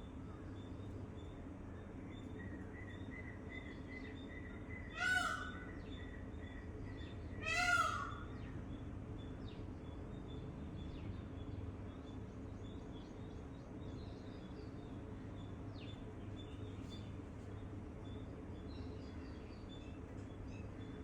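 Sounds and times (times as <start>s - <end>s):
harsh bird calls: 4.7s - 6.6s, 7.4s - 8.6s.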